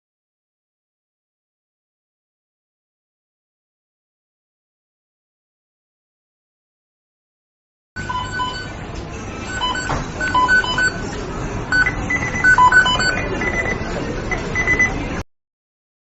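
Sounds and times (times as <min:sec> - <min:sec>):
short electronic beeps: 0:08.0 - 0:08.7, 0:09.5 - 0:11.1, 0:11.7 - 0:15.0.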